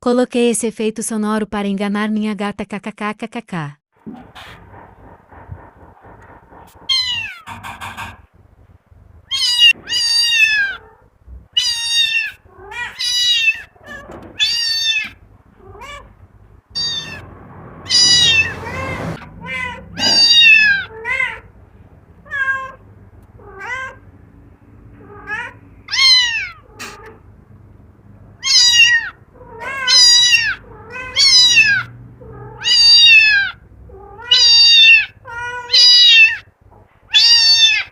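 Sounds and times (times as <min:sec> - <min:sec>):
cat meowing: 0:06.8 - 0:07.5, 0:09.3 - 0:16.2, 0:16.8 - 0:17.2, 0:17.9 - 0:21.5, 0:22.2 - 0:22.8, 0:23.4 - 0:24.0, 0:24.9 - 0:27.2, 0:28.4 - 0:36.5, 0:37.1 - 0:37.9.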